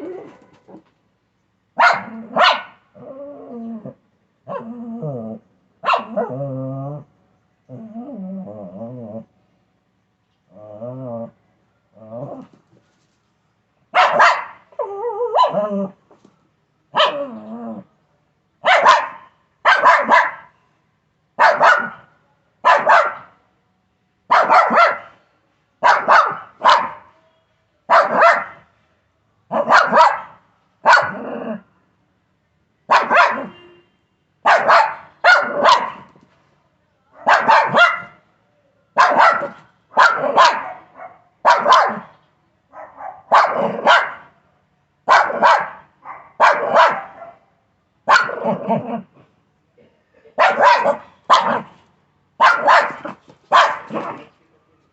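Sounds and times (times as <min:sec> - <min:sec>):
dog barking: 0:01.8 - 0:02.8, 0:05.8 - 0:06.4, 0:13.9 - 0:14.7, 0:15.3 - 0:15.7, 0:17.0 - 0:17.3, 0:18.6 - 0:20.6, 0:21.4 - 0:23.4, 0:24.3 - 0:25.2, 0:25.8 - 0:27.2, 0:27.9 - 0:28.7, 0:29.5 - 0:31.3, 0:32.9 - 0:33.6, 0:34.4 - 0:36.1, 0:37.1 - 0:38.2, 0:39.0 - 0:44.4, 0:45.1 - 0:48.8, 0:50.4 - 0:51.8, 0:52.4 - 0:54.3.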